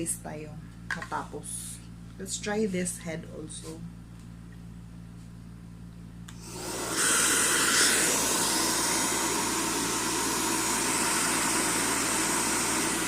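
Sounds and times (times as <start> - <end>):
hair dryer blowing: 6.3 - 13.0.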